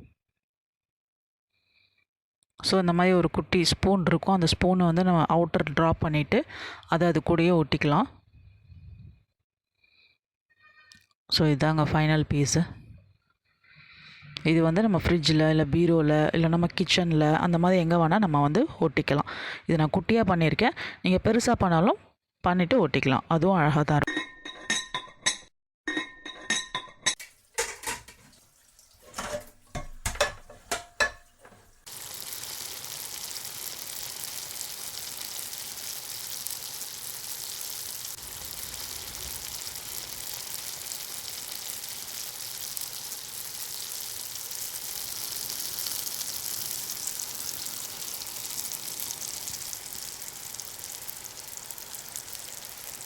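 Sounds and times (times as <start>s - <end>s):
steady hiss: 30.5s - 53.0s.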